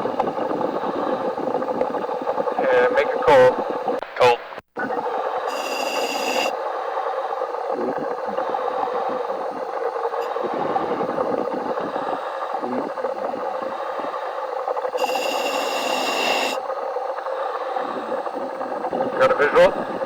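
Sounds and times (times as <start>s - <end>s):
bubbling from exhaust: 0.0s - 4.2s, 4.8s - 20.0s
breathing air rushing: 5.1s - 16.6s.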